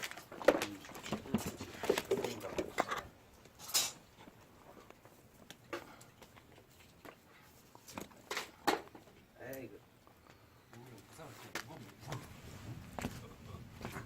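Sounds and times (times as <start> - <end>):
low murmuring: 10.7 - 14.0.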